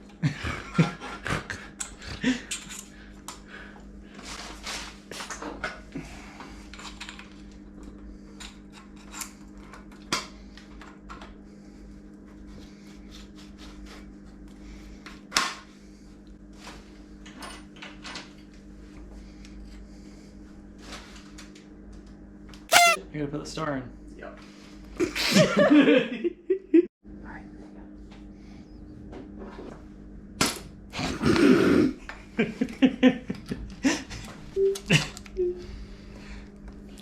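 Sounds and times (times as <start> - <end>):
tools and bicycle parts clinking: 1.8 - 2.9.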